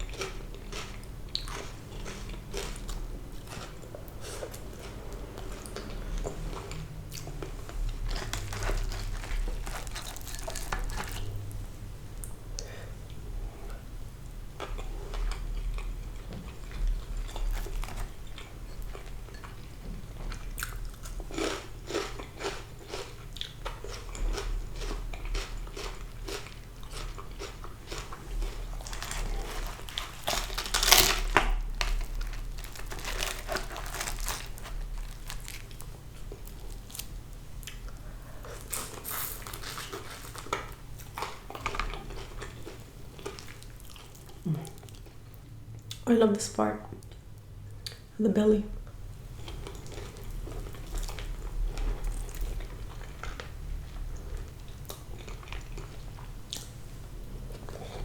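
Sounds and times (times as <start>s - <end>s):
wet chewing: 0.0s - 11.4s, 14.6s - 46.0s
crunching of fried fish skin: 7.8s - 11.4s, 20.6s - 37.9s.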